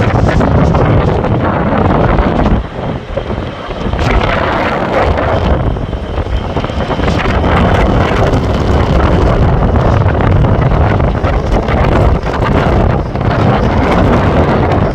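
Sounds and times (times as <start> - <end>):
wind buffeting microphone: 0.0 - 14.9.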